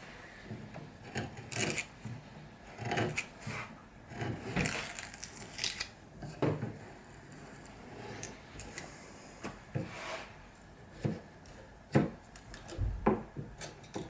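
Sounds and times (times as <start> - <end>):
wood scraping by hand: 2.7 - 5.2, 9.8 - 11.6.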